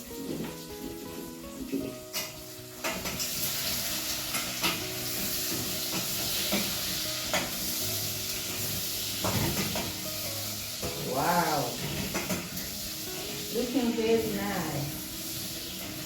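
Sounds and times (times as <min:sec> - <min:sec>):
vegetables sizzling in hot oil: 0:00.0 - 0:16.0.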